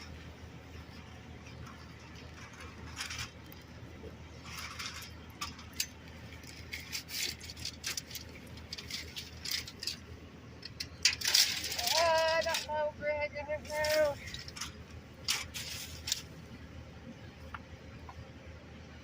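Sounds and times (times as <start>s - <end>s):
low steady rumble: 0.0s - 19.0s
light clinks and rattles: 4.4s - 12.9s, 13.6s - 16.3s
items rummaged through by hand: 4.4s - 16.4s.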